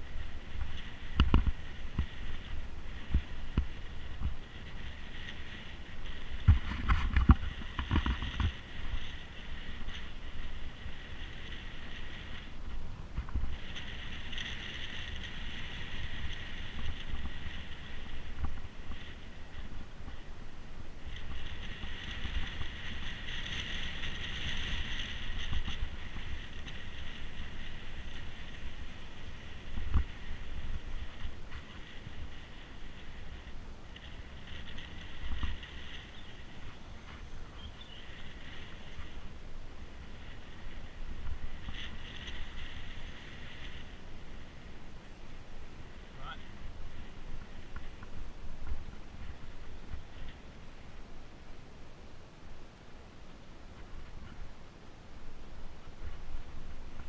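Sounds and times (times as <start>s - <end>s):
bike rumbling over rough trail: 0.0s - 51.8s
wind buffeting microphone: 0.0s - 52.6s
bike thuds and rattles: 6.4s - 8.6s.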